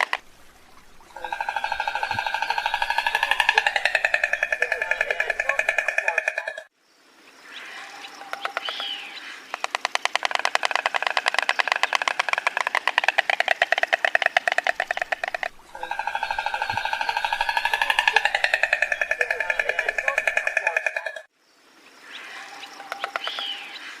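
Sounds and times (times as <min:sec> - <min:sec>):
faint soft calls: 0:00.0 - 0:06.7, 0:10.1 - 0:21.3
stork bill clattering: 0:00.0 - 0:06.7, 0:08.3 - 0:21.3.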